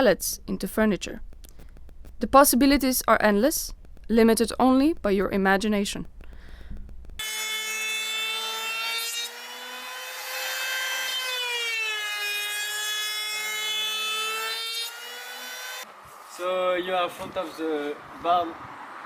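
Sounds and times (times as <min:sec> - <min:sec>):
power tool whining: 0:06.1 - 0:15.9.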